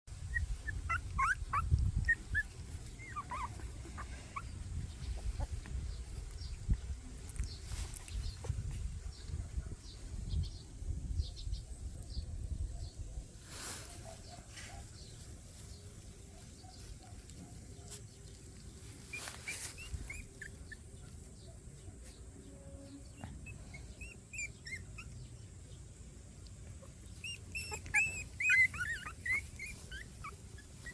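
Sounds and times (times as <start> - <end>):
puppies whimpering and squeaking: 0.1 - 6.7, 13.9 - 25.7, 26.6 - 30.9
rustling: 0.1 - 23.9, 24.6 - 30.9.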